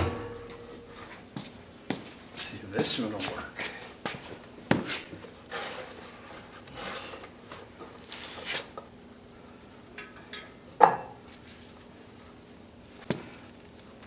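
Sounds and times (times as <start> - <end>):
sharp knock: 0.0 - 0.6.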